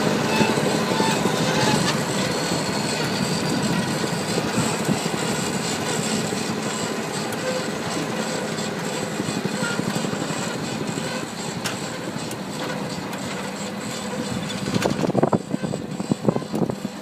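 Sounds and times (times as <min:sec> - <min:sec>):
farm machine engine running: 0:00.0 - 0:17.0
dense rattle: 0:09.6 - 0:16.8.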